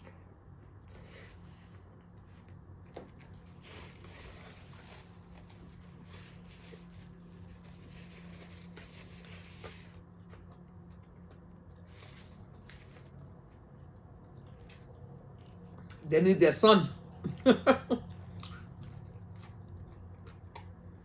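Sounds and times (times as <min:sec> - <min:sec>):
low steady hum: 0:00.0 - 0:21.0
person chewing food: 0:09.4 - 0:16.0, 0:17.0 - 0:21.0.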